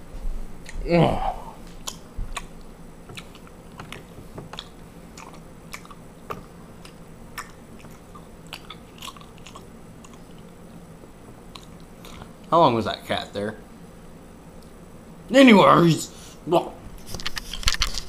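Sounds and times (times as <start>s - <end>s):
person chewing food: 1.4s - 10.8s, 11.4s - 12.5s.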